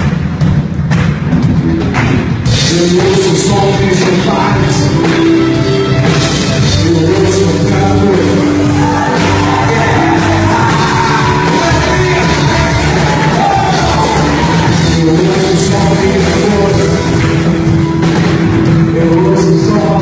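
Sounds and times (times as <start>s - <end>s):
live worship music: 0.0s - 20.0s
congregation singing: 6.8s - 18.0s
crowd shouts and whoops: 8.4s - 15.1s.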